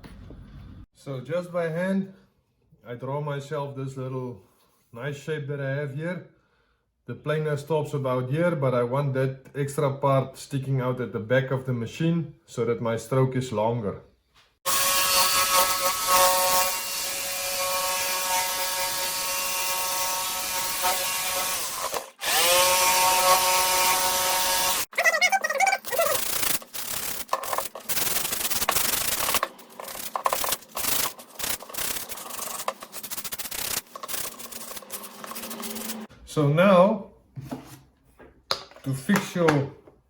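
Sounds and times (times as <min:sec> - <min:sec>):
electric jigsaw cutting board: 0:14.7 - 0:24.9, 0:25.9 - 0:36.1
sandpaper rubbing on wood: 0:24.9 - 0:36.1.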